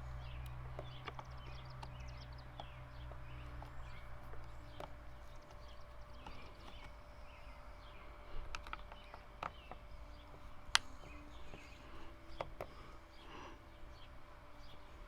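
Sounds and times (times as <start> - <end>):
birds chirping: 0.0 - 15.0
screwdriver clicking on plastic: 8.5 - 9.8.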